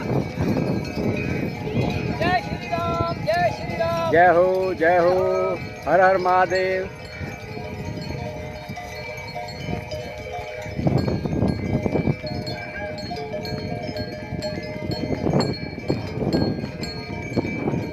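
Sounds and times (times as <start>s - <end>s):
cattle bells clanking: 0.0s - 17.9s
animal calls: 12.3s - 13.5s.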